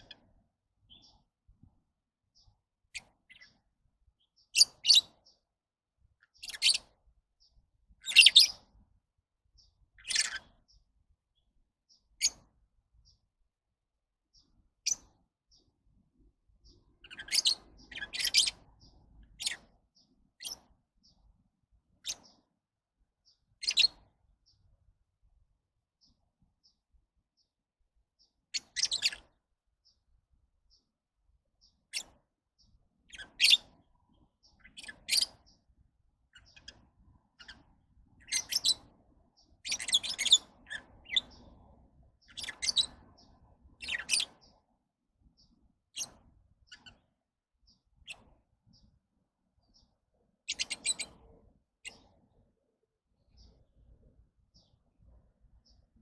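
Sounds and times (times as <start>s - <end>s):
lovebirds chirping: 0.0s - 56.0s
high bird peeps: 4.5s - 5.2s, 6.3s - 7.0s, 8.0s - 8.6s, 10.0s - 10.6s, 17.0s - 19.8s, 23.6s - 24.0s, 28.5s - 29.4s, 33.1s - 33.8s, 34.5s - 35.6s, 36.3s - 38.9s, 39.6s - 41.6s, 42.2s - 44.6s, 46.0s - 47.1s, 50.5s - 52.1s.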